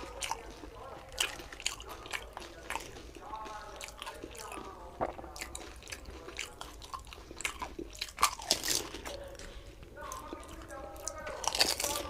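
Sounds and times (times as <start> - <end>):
wet chewing: 0.0 - 12.0
crisp shells crunching: 10.2 - 12.0.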